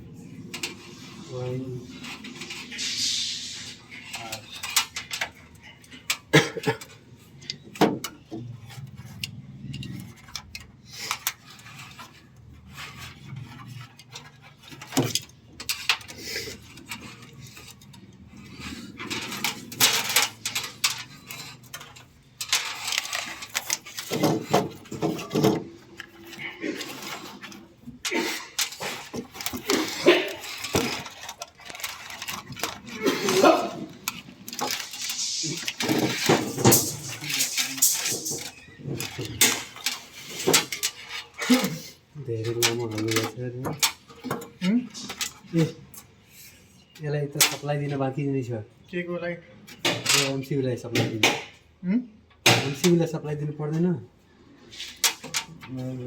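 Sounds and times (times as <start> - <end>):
people talking: 41.5 - 43.8.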